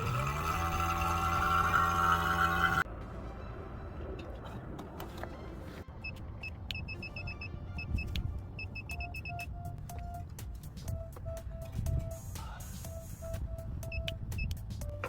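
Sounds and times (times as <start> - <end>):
lower repeating beep: 6.0 - 9.8
quick high beeps: 6.0 - 10.2.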